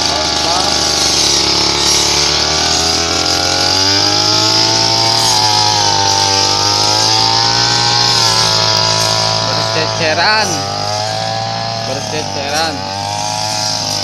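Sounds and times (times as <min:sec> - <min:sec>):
brush cutter engine cutting stalks: 0:00.0 - 0:14.0.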